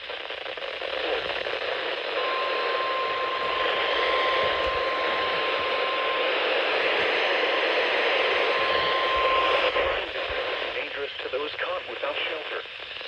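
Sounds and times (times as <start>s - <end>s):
radio static hiss: 0.0s - 13.0s
faint steady whistle: 1.4s - 10.7s.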